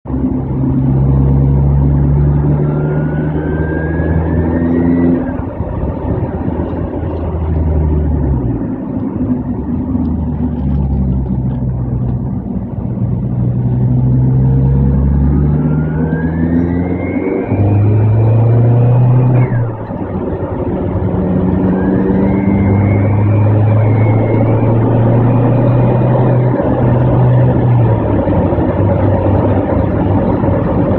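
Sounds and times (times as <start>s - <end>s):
petrol engine revving: 0.1s - 30.9s
turbo whistle rising: 14.4s - 20.0s, 21.2s - 27.9s.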